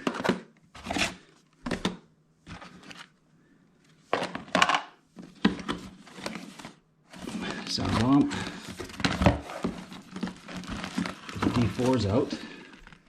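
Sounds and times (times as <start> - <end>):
packaging rustling: 5.4 - 13.0.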